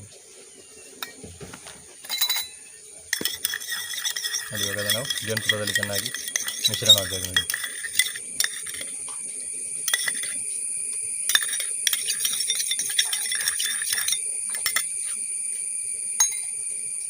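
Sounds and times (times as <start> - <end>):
spoon clinking against cup: 1.0 - 1.2, 2.0 - 9.0, 9.9 - 10.4, 11.3 - 14.9, 16.2 - 16.6.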